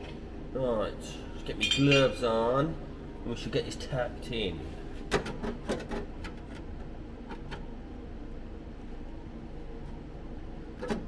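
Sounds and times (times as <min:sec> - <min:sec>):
steady machine hum: 0:00.0 - 0:05.1.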